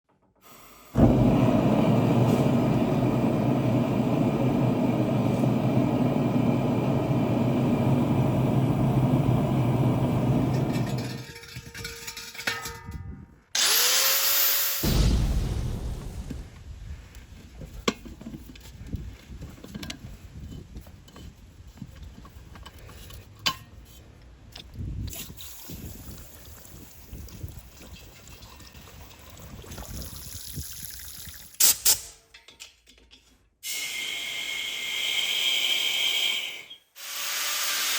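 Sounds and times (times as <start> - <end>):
gas forge burner rushing: 0.8 - 11.4
tools clinking on metal cylinder: 10.7 - 13.0, 31.6 - 33.4.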